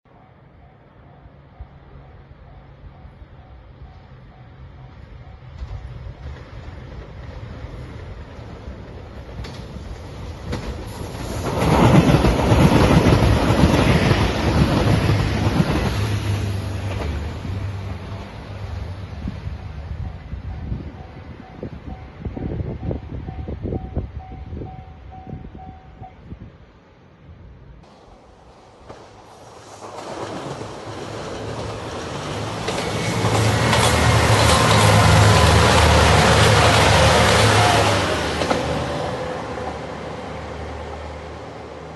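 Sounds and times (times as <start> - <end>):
train passing at speed: 0.1 - 41.9
sharp train wheel clacks: 28.8 - 38.9.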